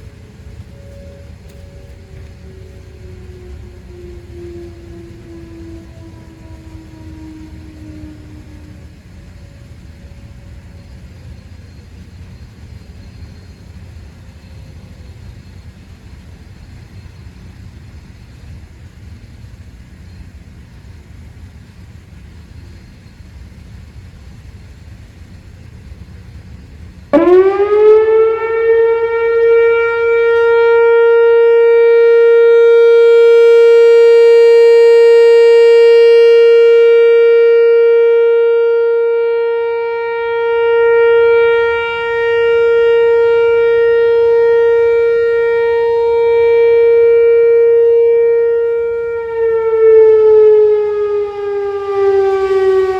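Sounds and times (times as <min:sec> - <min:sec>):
low background rumble: 0:00.0 - 0:37.2
electronic warning siren: 0:00.0 - 0:52.9.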